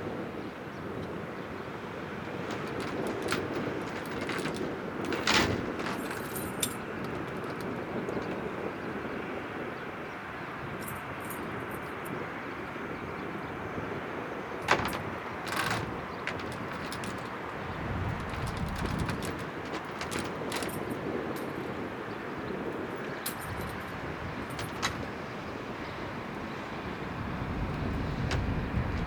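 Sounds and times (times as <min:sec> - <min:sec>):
distant propeller plane engine: 0:00.0 - 0:29.0
metallic jingling rattles: 0:01.9 - 0:08.6, 0:10.8 - 0:12.3, 0:13.1 - 0:26.0.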